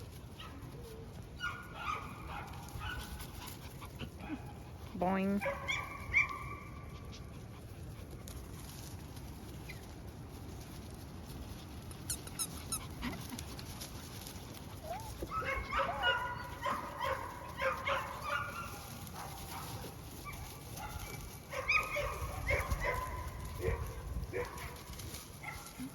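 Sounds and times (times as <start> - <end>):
puppies yipping and whining: 11.7 - 25.2.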